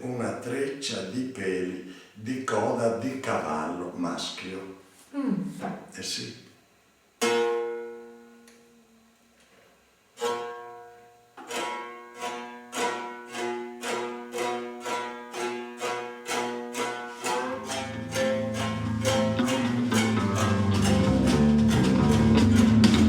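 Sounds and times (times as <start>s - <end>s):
ringing plucked string notes: 7.2s - 8.8s, 10.2s - 23.0s
low buzzing: 17.1s - 23.0s.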